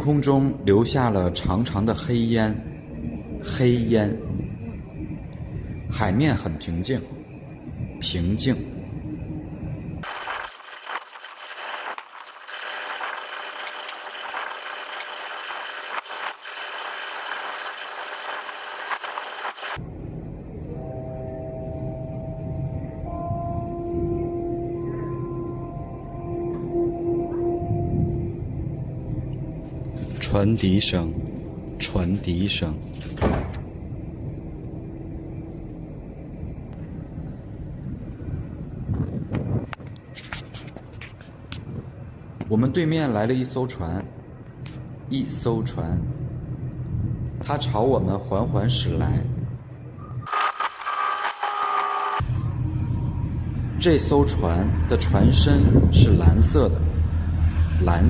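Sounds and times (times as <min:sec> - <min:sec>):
faint machinery hum: 0:00.0 - 0:10.4
steady rushing noise: 0:09.0 - 0:20.6, 0:50.3 - 0:52.2.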